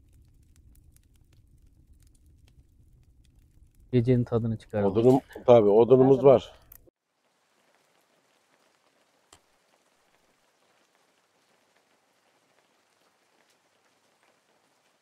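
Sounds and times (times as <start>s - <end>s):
faint steady hiss: 3.0s - 15.0s.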